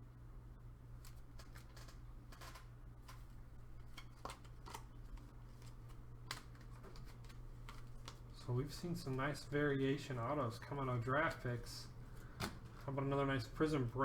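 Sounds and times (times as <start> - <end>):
steady low hum: 0.0 - 14.0
trading cards clicking and rustling: 1.0 - 8.3.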